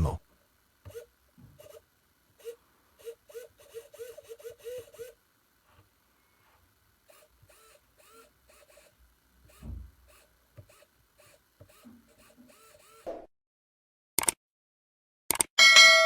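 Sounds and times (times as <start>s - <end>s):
servo motors whirring: 0.0s - 0.2s, 0.8s - 13.2s.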